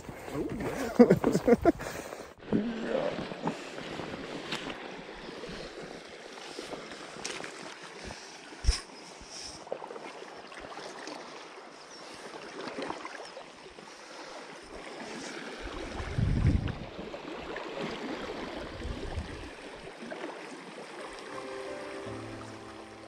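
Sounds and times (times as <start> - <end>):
wind blowing across microphone: 15.6 - 17.0, 18.6 - 19.6.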